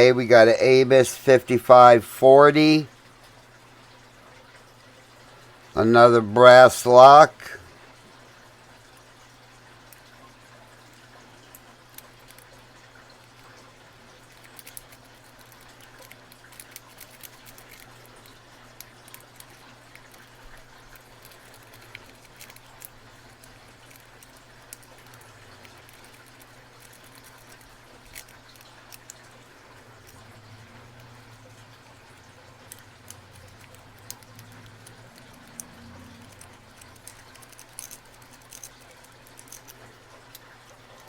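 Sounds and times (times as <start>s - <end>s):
low steady hum: 0.0s - 41.0s
lock pick clicking and scraping: 14.3s - 29.2s, 32.7s - 39.8s.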